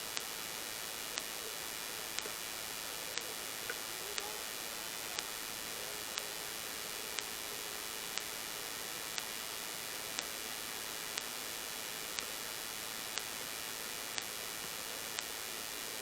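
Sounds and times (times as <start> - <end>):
static hiss: 0.0 - 16.0
sharp ticks: 3.2 - 4.4, 7.2 - 7.4, 10.2 - 10.4, 11.2 - 11.4.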